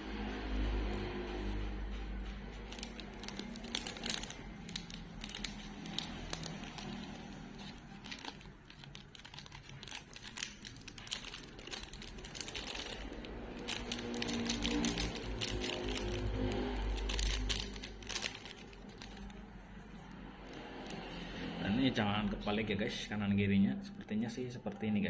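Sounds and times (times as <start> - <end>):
plastic packaging crinkling: 2.5 - 21.1.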